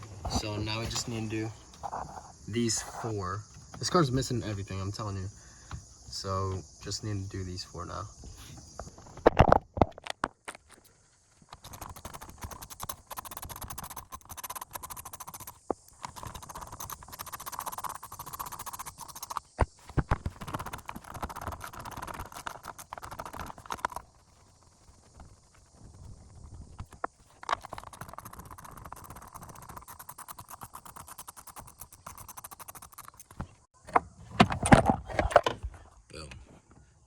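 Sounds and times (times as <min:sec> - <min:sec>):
hand ratchet clicking: 0:11.6 - 0:19.6, 0:27.5 - 0:33.4.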